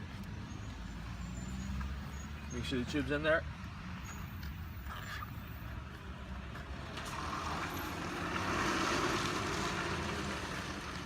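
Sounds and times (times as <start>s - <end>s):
low road rumble: 0.0s - 11.0s
vehicle passing close by: 6.8s - 11.0s.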